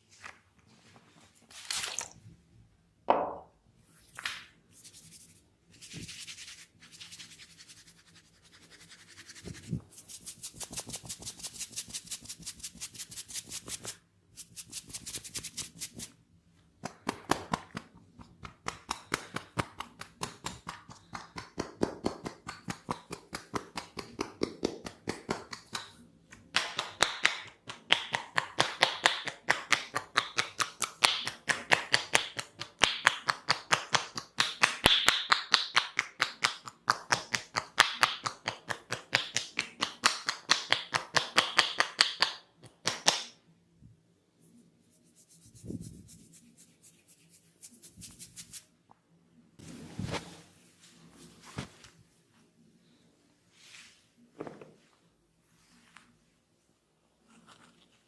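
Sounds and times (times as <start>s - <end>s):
fast massage strokes on hair: 44.9s - 48.7s
hands brushing hair: 44.9s - 48.7s, 49.6s - 51.9s.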